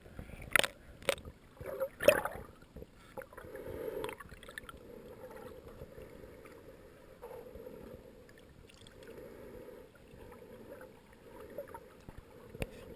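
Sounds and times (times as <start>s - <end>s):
gurgling noise: 0.3s - 6.6s.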